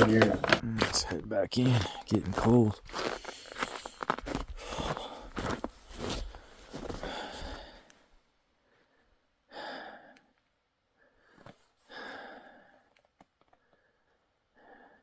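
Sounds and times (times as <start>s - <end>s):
person breathing heavily: 0.4s - 8.0s, 11.1s - 12.9s.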